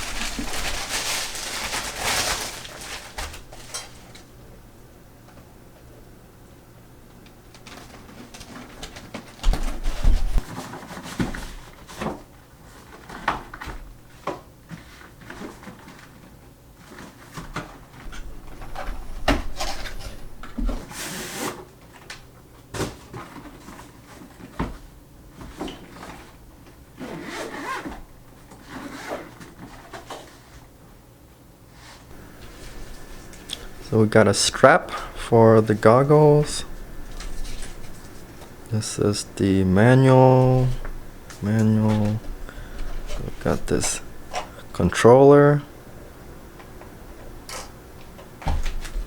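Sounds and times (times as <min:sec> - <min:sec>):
packaging tearing: 0:00.0 - 0:04.2
packaging rustling: 0:00.0 - 0:04.4, 0:32.1 - 0:39.4.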